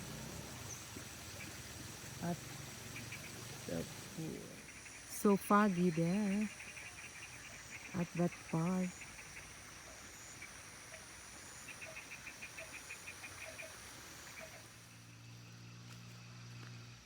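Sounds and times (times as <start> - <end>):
insects high-pitched drone: 0.0 - 17.0.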